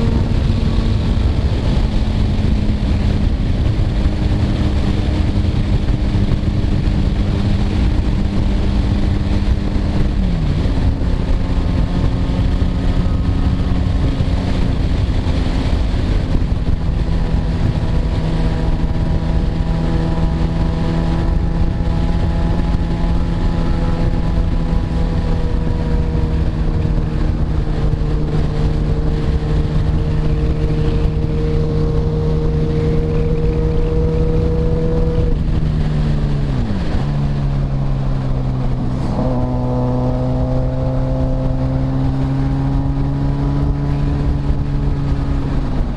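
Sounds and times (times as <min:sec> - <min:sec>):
motorcycle engine running: 0:00.0 - 0:45.9
wind buffeting microphone: 0:00.0 - 0:45.9.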